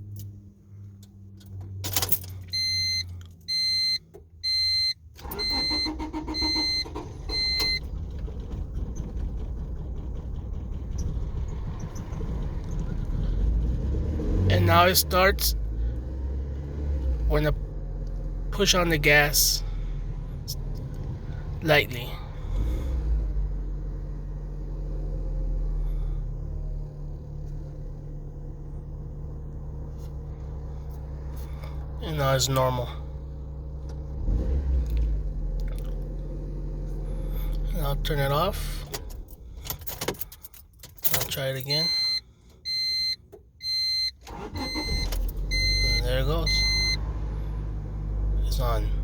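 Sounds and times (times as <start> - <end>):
car engine cranking without starting: 0.0 - 49.0
car warning chime beeping: 2.4 - 7.9, 41.4 - 47.0.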